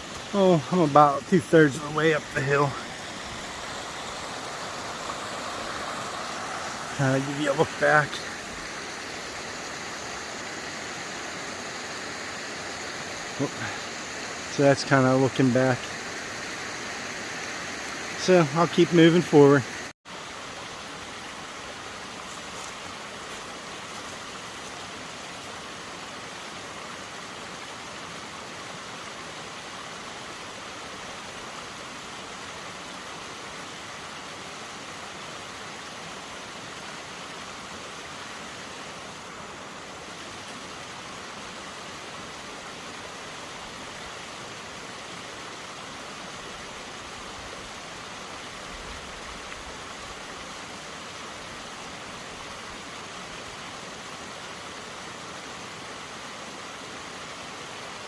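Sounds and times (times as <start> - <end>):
steady rushing noise: 0.0 - 19.9.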